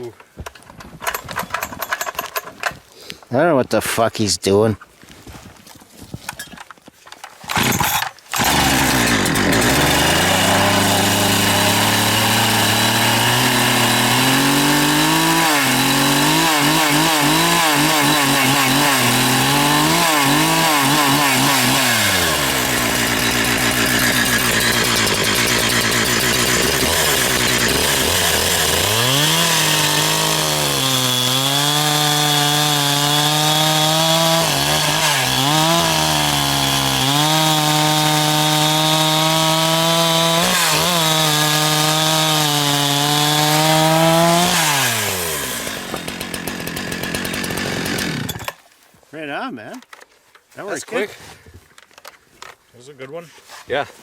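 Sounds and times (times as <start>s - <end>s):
chainsaw cutting through log: 7.4s - 48.6s.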